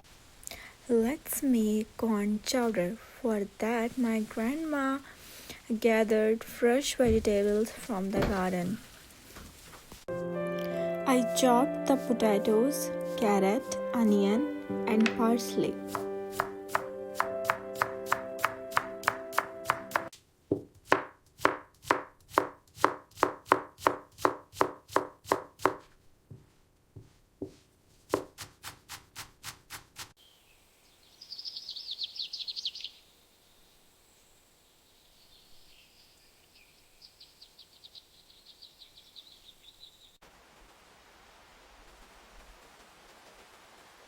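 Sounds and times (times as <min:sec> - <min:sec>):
knife chopping on cutting board: 0:15.9 - 0:25.9, 0:27.4 - 0:30.1
birds chirping in trills: 0:30.2 - 0:40.2.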